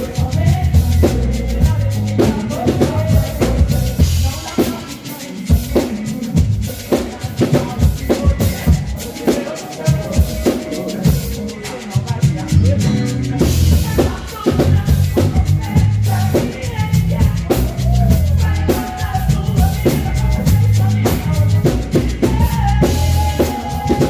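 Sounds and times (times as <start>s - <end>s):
low bass notes: 0.0s - 4.4s, 12.3s - 23.4s
drum kit beat: 0.0s - 24.0s
instrumental band music: 0.0s - 24.0s.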